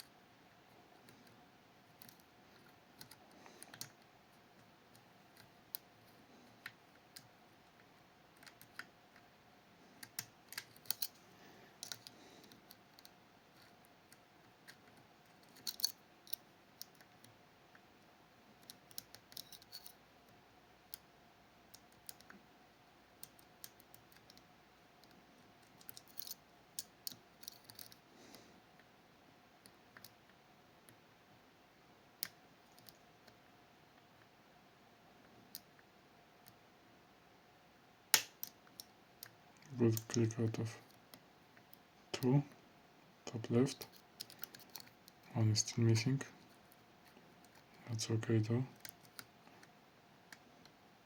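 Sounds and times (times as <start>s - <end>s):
faint steady hum: 0.0s - 51.0s
lock picks clicking in lock: 10.0s - 11.2s, 15.4s - 17.0s, 18.6s - 20.0s, 25.7s - 28.0s.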